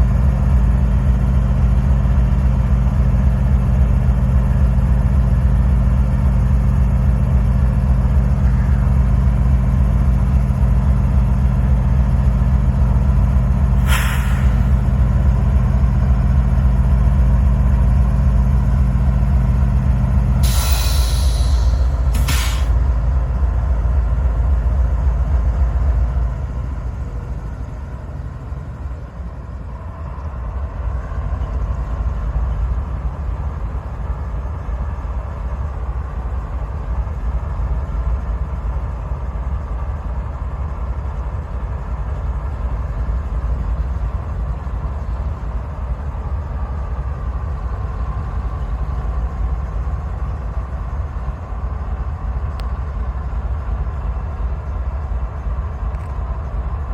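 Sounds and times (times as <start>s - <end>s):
diesel locomotive engine rumble: 0.0s - 56.9s.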